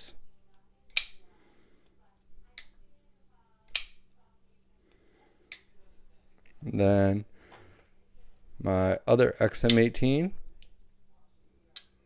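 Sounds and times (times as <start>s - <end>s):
folding knife blade clicks: 0.9s - 1.2s, 3.7s - 4.0s.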